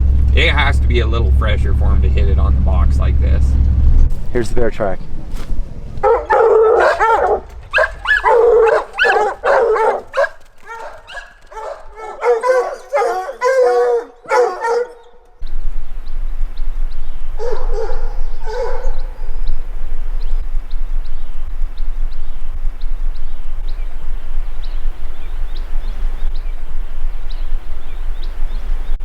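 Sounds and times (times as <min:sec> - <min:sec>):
steady rushing noise: 0:00.0 - 0:12.0, 0:15.4 - 0:29.0
hounds baying: 0:06.0 - 0:15.4, 0:17.4 - 0:19.6.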